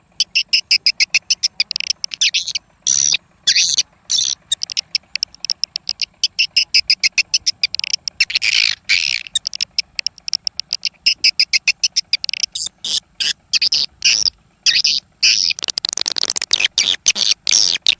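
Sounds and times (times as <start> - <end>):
swiftlet twittering chirps and trill: 0.0 - 17.9
swiftlet sharp high clicks: 0.2 - 12.7.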